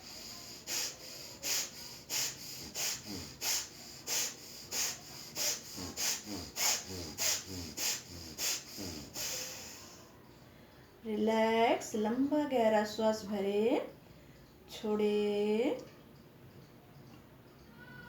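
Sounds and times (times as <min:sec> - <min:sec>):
rapid breathing through nose: 0:00.0 - 0:11.0.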